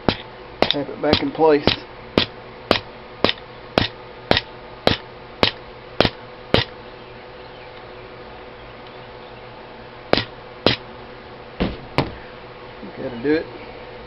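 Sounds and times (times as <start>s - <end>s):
rubber mallet tapping metal: 0.0s - 6.7s, 10.1s - 10.8s.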